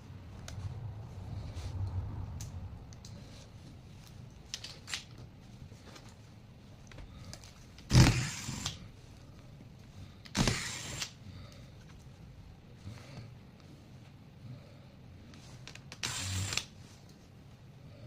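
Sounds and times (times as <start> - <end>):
compressed air blasts: 7.9 - 8.8, 10.3 - 11.2.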